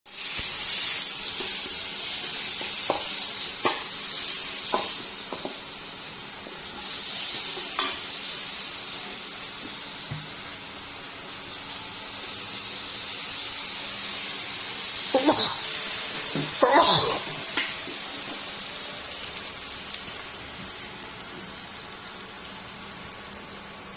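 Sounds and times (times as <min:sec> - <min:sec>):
food sizzling in a pan: 0:00.1 - 0:23.9.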